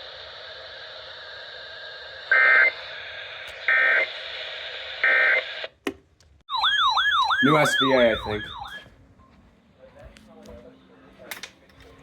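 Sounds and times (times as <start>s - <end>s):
radio static hiss: 0.0s - 5.7s.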